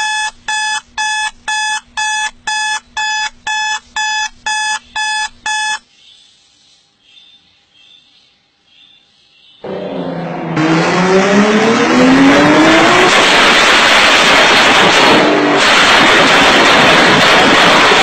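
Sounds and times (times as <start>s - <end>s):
car engine revving to limiter: 9.6s - 15.6s.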